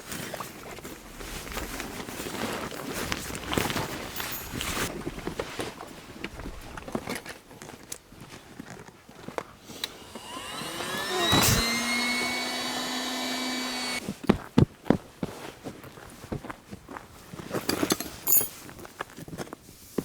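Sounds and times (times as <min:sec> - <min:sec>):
electric air pump whining: 0:09.7 - 0:14.0.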